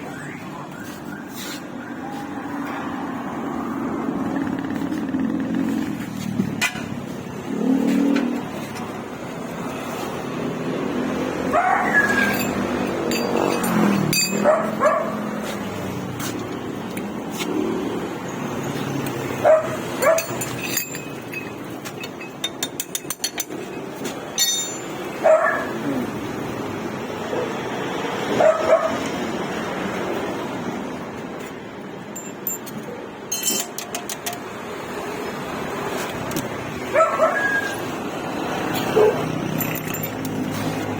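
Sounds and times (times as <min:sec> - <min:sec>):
dog barking and yelping: 0:11.4 - 0:12.8, 0:13.7 - 0:15.5, 0:19.3 - 0:20.4, 0:25.2 - 0:26.2, 0:28.3 - 0:29.1, 0:36.8 - 0:37.9, 0:38.8 - 0:39.6.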